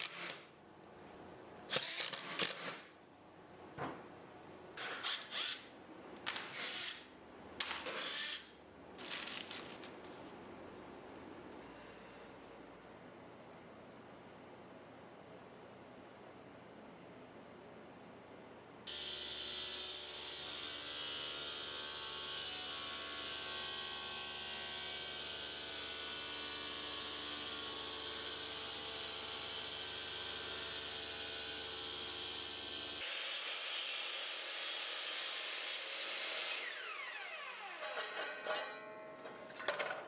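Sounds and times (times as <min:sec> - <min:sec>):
power tool cutting wood: 0:25.1 - 0:38.0.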